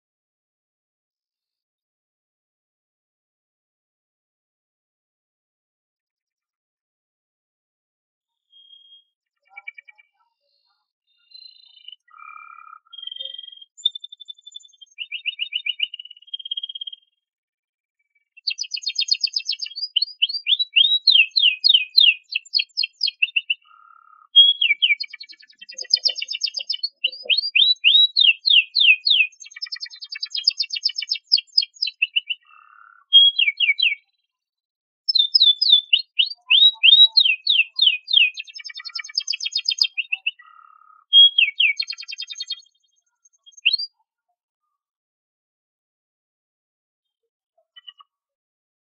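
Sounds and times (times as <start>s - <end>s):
canary singing trills: 8.5s - 17.1s, 18.2s - 34.2s, 35.1s - 44.0s.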